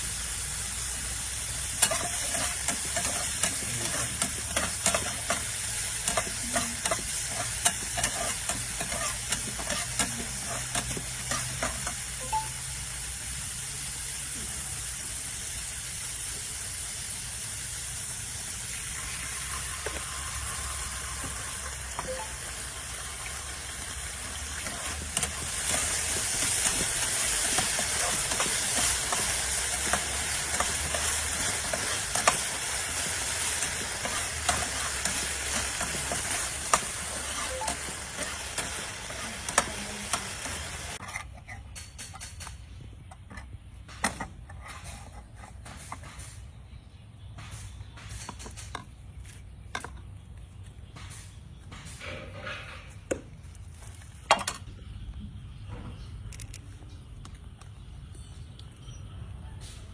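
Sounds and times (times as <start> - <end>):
steady hiss: 0.0 - 41.0
crackles and clicks: 21.3 - 41.1, 56.2 - 57.8.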